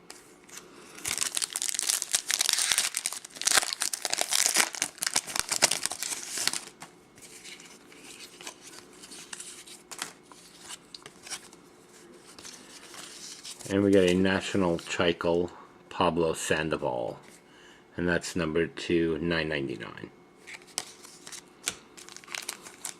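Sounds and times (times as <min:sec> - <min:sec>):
foil pack tearing and crinkling: 0:00.9 - 0:11.5, 0:20.8 - 0:22.9.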